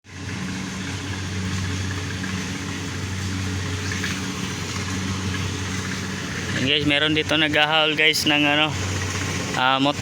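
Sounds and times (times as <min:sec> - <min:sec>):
engine idling: 0:00.1 - 0:10.0.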